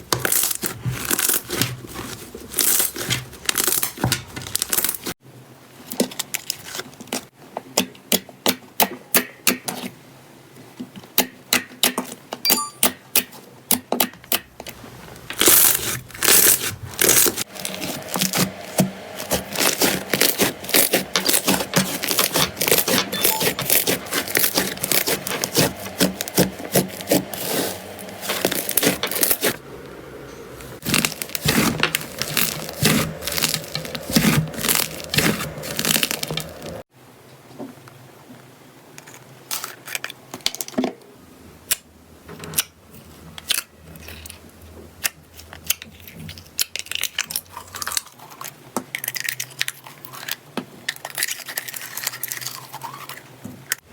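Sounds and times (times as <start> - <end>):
slime crackling and popping: 15.4 - 29.5, 30.8 - 36.8.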